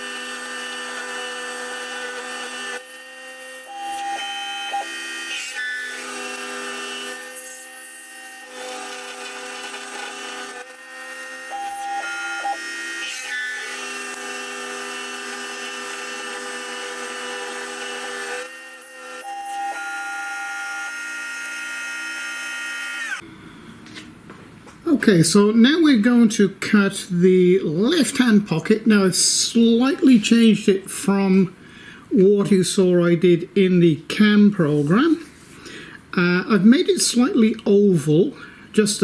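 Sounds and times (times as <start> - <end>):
motors whining: 8.6 - 23.2.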